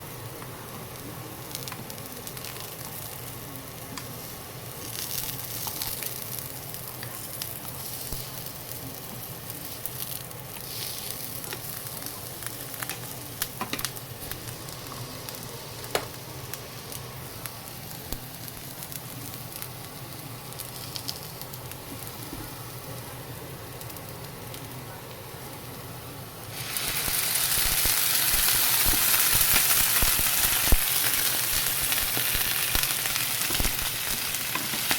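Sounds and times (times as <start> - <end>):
food sizzling in a pan: 0.0 - 34.9.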